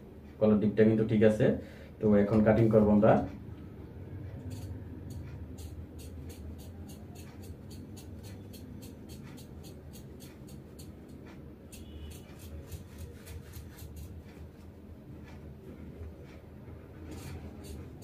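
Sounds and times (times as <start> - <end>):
scissors snipping fabric: 4.4 - 14.6, 17.0 - 18.0.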